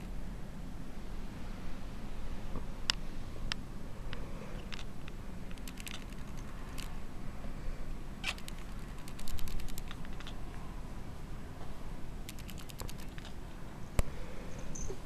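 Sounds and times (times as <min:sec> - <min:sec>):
cat clicking and creaking: 0:04.6 - 0:07.0, 0:08.2 - 0:10.4, 0:12.2 - 0:13.5.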